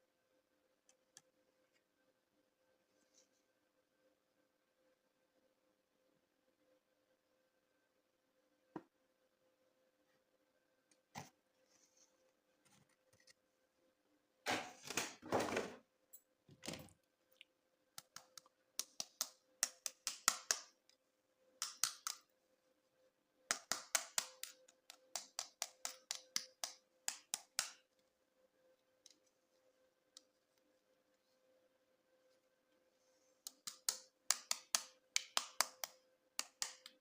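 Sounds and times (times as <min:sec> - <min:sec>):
faint steady hum: 0:00.0 - 0:15.0, 0:15.7 - 0:37.0
plastic toys clicking and tapping: 0:18.0 - 0:20.7, 0:23.5 - 0:27.8, 0:33.5 - 0:37.0.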